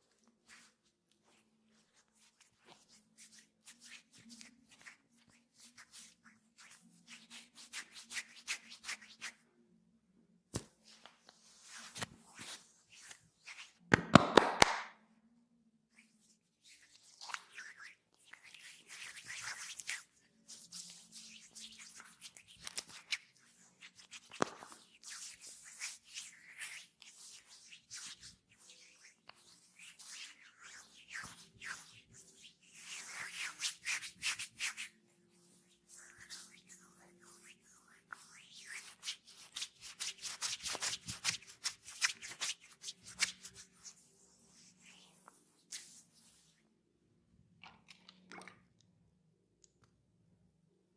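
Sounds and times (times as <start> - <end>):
hands rubbing oiled skin: 0.2 - 9.4, 16.0 - 46.6.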